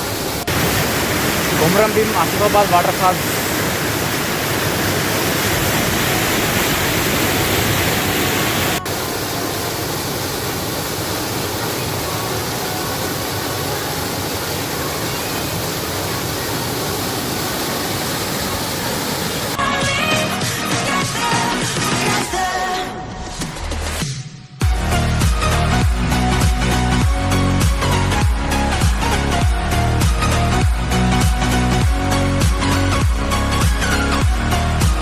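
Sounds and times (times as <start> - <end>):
waterfall rushing: 0.0 - 22.2
music: 19.6 - 35.0.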